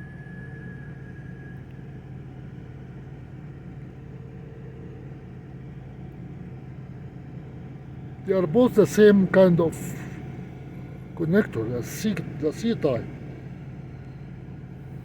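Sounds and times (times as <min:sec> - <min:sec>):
faint high tone: 0:00.0 - 0:02.1
low mechanical hum and rumble: 0:00.0 - 0:15.0.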